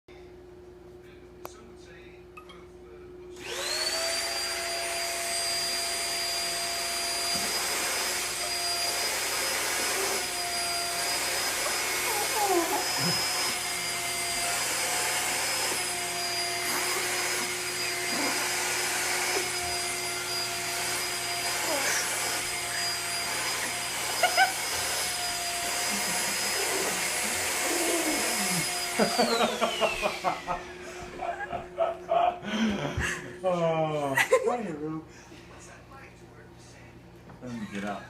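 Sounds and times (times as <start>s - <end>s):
vacuum cleaner motor whine: 3.4s - 31.8s.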